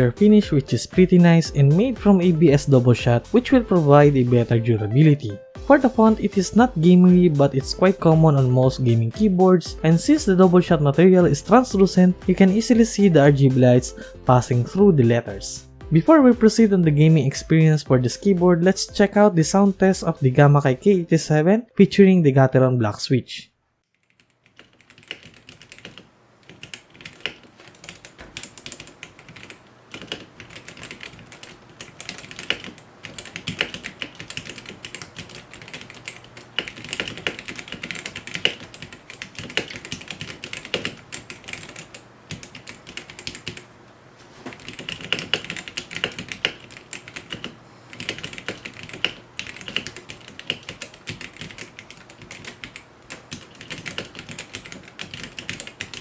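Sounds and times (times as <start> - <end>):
mechanical keyboard typing: 24.0 - 43.6, 44.5 - 56.0.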